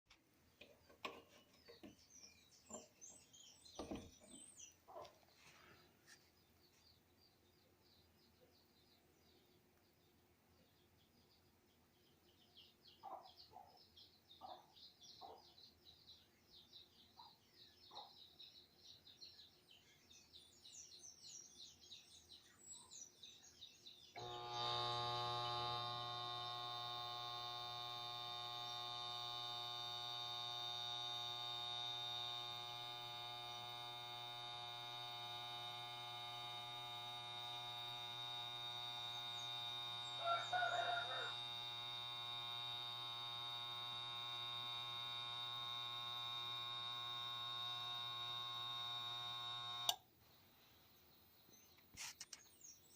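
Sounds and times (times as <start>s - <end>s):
faint birds chirping: 0.1s - 52.9s
refrigerator motor humming: 24.2s - 50.0s.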